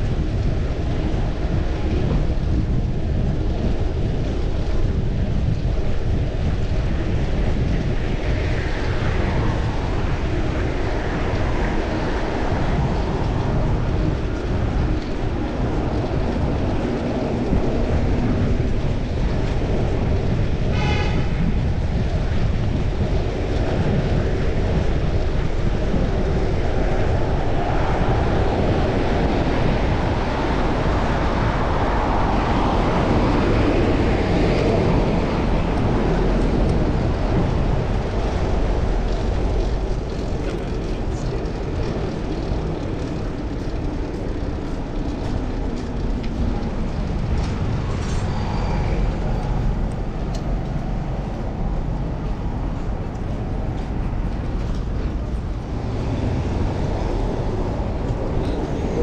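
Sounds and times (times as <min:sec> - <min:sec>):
wind and road noise: 0:00.0 - 0:59.0.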